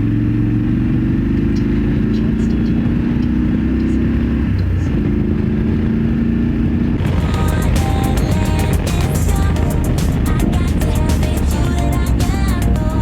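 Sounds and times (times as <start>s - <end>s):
motorcycle engine pulling away: 0.0s - 13.0s
music: 7.0s - 13.0s.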